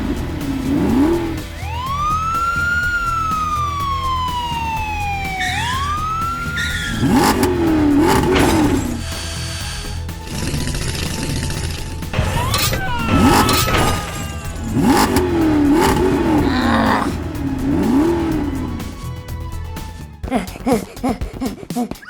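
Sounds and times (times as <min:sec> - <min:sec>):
engine-like revving sound effect: 0:00.0 - 0:19.2
background music: 0:00.0 - 0:22.0
siren-like swooping tone: 0:01.6 - 0:08.2.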